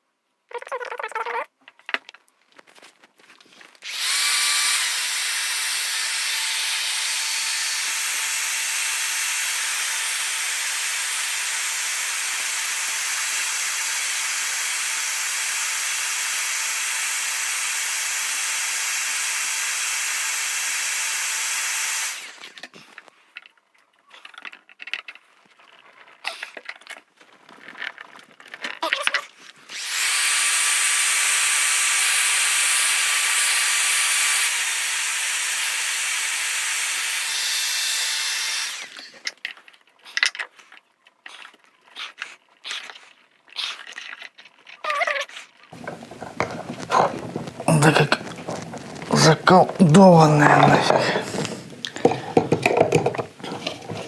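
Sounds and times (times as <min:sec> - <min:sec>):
power tool hissing: 0:03.8 - 0:22.6, 0:29.7 - 0:39.2, 0:45.8 - 0:54.0
small knocks: 0:45.8 - 0:49.8, 0:50.9 - 0:54.0.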